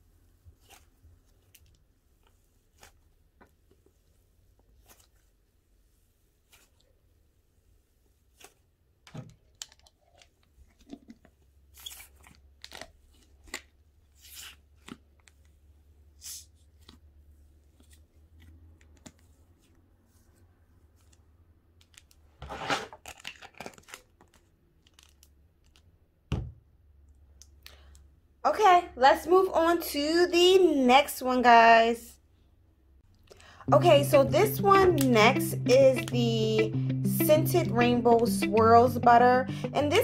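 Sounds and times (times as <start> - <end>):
slime squishing: 0.0 - 22.2.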